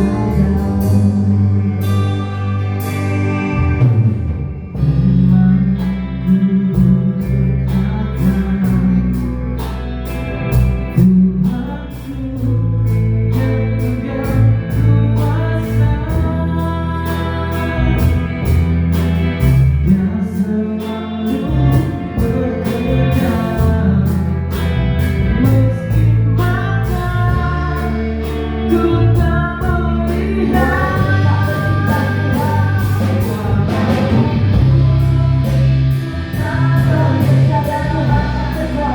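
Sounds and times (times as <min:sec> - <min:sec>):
bass: 0:00.0 - 0:38.9
person singing: 0:00.0 - 0:38.9
steady drum beat: 0:03.5 - 0:05.6, 0:29.2 - 0:38.9.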